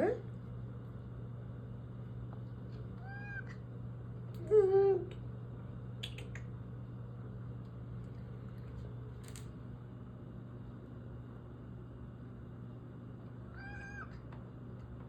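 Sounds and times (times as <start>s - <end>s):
cat meowing: 3.0s - 3.6s, 13.5s - 14.2s.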